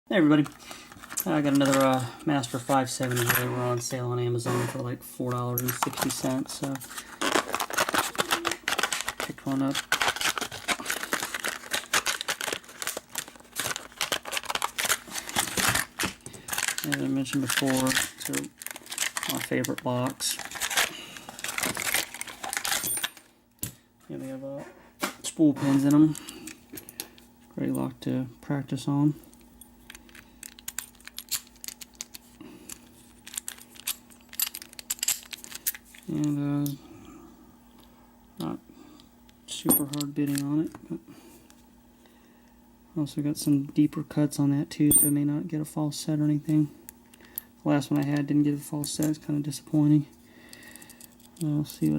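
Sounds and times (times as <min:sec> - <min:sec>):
plastic packaging crinkling: 0:00.3 - 0:03.4, 0:05.6 - 0:23.3, 0:29.9 - 0:36.2.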